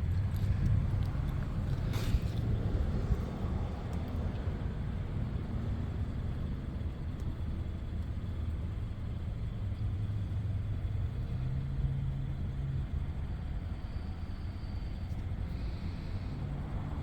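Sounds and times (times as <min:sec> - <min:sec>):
car engine idling: 0:12.2 - 0:17.0.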